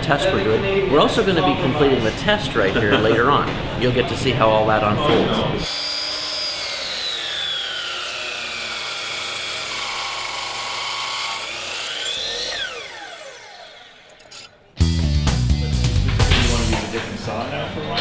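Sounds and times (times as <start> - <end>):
chop saw spinning down: 5.6 - 14.6.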